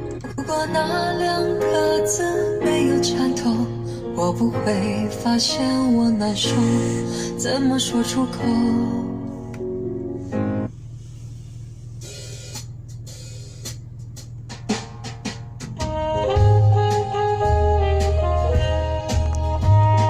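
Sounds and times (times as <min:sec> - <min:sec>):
band with deep bass: 0:08.2 - 0:20.0
song: 0:15.8 - 0:20.0.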